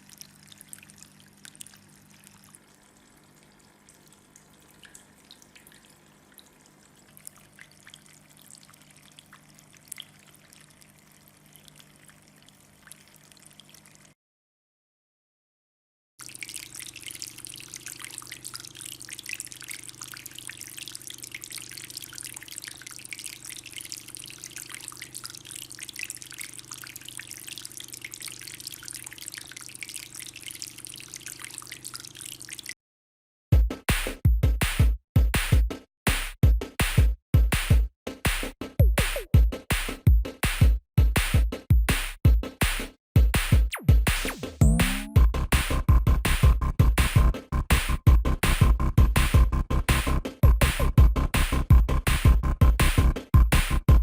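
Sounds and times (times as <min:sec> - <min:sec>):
fountain water trickling: 0:00.0 - 0:14.2, 0:16.2 - 0:32.8
electronic music with heavy beat: 0:33.6 - 0:54.0.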